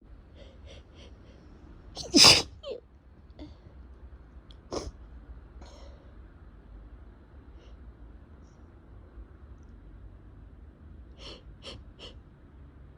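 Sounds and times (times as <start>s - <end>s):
person sneezing: 2.0s - 2.6s.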